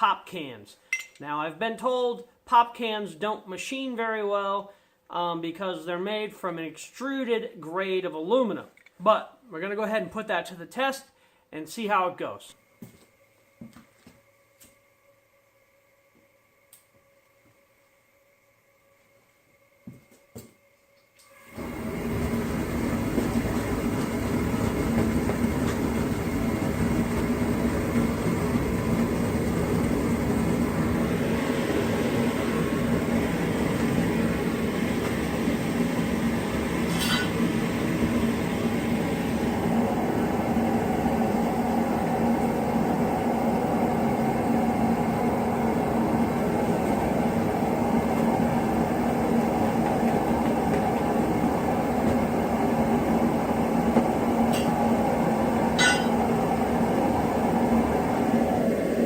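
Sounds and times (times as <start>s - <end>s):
furnace roaring: 0.0s - 59.0s.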